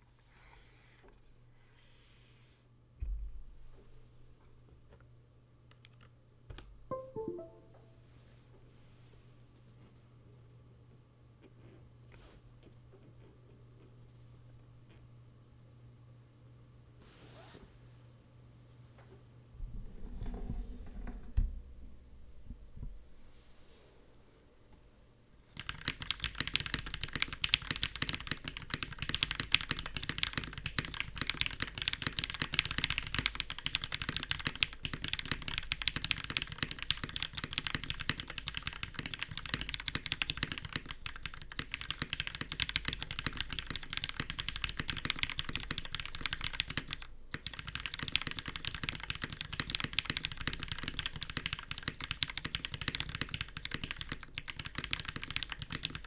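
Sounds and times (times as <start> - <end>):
fast mechanical keyboard typing: 25.5 - 56.0.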